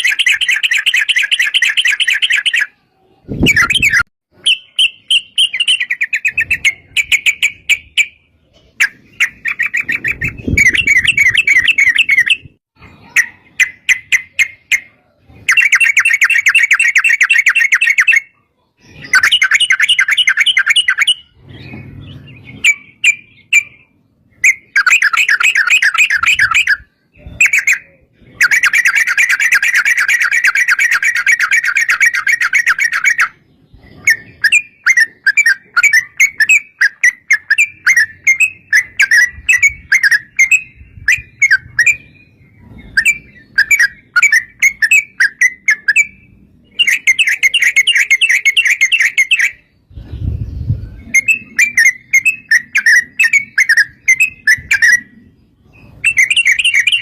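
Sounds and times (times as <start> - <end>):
bird chattering song: 0.0 - 57.0.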